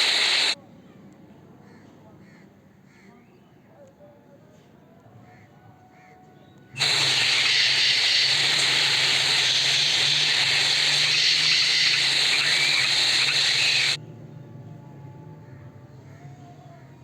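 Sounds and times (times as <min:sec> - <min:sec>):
loud steady hiss: 0:00.0 - 0:00.6, 0:06.8 - 0:14.0.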